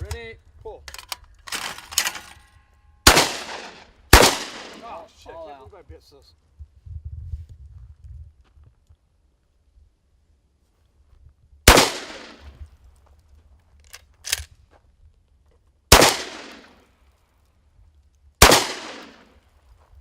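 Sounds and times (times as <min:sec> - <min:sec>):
echoing shotgun blasts: 0:03.0 - 0:05.1, 0:11.6 - 0:12.5, 0:15.9 - 0:16.8, 0:18.4 - 0:19.4.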